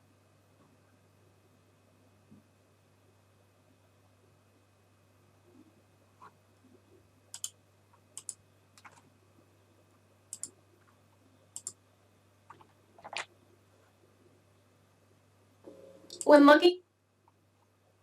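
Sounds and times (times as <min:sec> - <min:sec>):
mouse buttons clicking: 0:07.3 - 0:07.6, 0:08.2 - 0:09.0, 0:10.3 - 0:10.6, 0:11.5 - 0:11.8.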